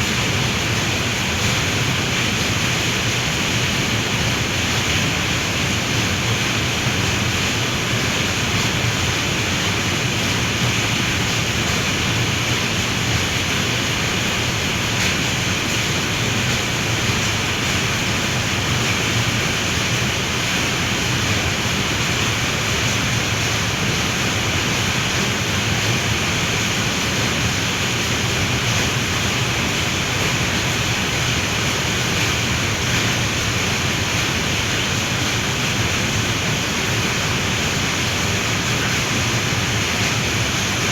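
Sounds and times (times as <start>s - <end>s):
heavy rain pouring: 0.0s - 40.9s.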